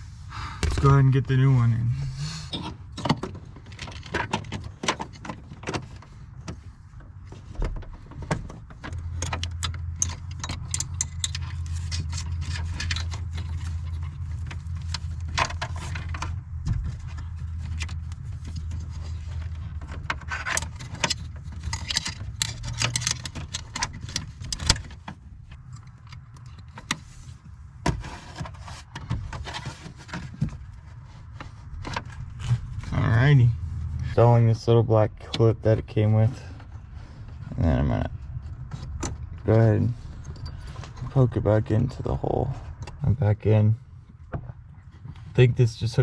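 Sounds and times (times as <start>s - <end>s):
steady low hum: 0.0s - 3.7s
metal cable clinking and rattling: 8.8s - 27.0s.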